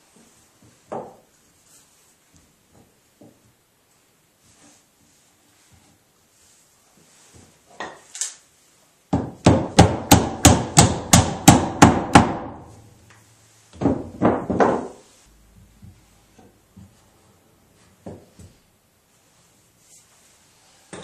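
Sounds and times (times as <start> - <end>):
hammer striking wood: 9.1 - 12.7, 13.8 - 15.0.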